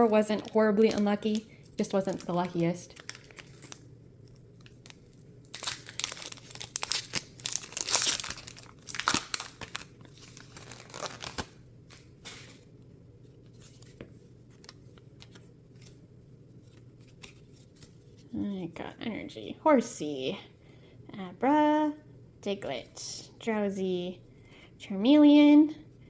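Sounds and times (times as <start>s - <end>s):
foil wrapper ripping and crinkling: 0.0s - 12.6s.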